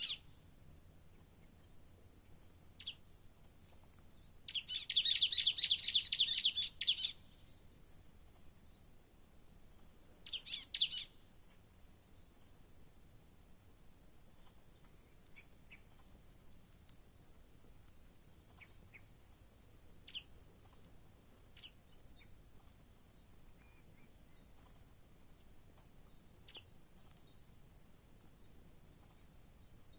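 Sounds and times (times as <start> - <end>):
bird chirps: 0.0 - 0.4, 1.6 - 3.1, 3.7 - 8.9, 10.2 - 11.3, 14.4 - 16.7, 17.8 - 19.3, 20.0 - 22.4, 23.1 - 24.8, 25.4 - 27.4
steady high hiss: 0.0 - 29.9.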